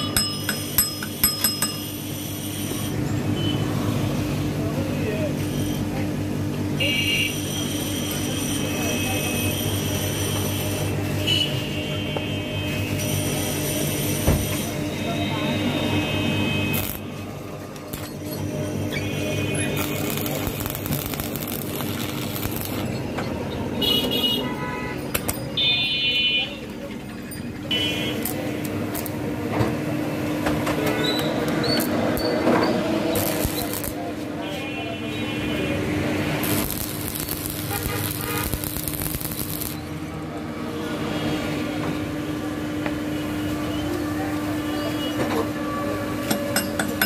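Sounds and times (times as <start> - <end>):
road traffic: 0.0 - 47.0
steady mechanical hum: 0.0 - 47.0
vehicle horn honking: 15.1 - 17.0, 23.8 - 26.6, 37.7 - 38.6.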